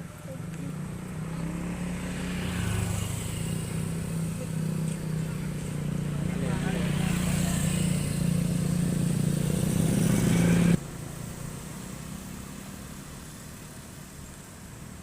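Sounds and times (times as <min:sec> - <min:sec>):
motor engine humming: 0:00.0 - 0:11.0
outdoor background noise: 0:00.0 - 0:15.0.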